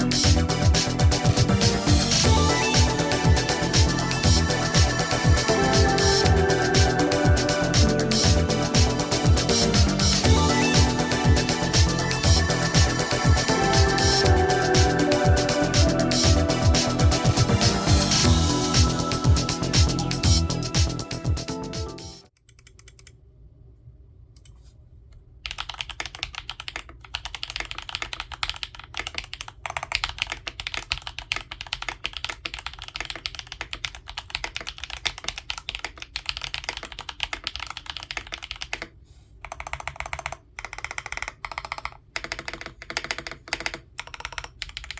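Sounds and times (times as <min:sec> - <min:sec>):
mechanical keyboard typing: 0:25.4 - 0:44.9.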